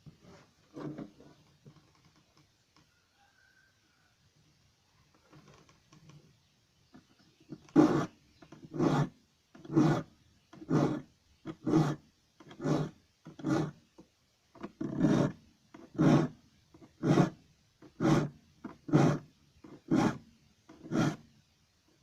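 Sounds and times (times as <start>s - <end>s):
file rasping on saw teeth: 7.7s - 13.8s, 14.8s - 21.2s.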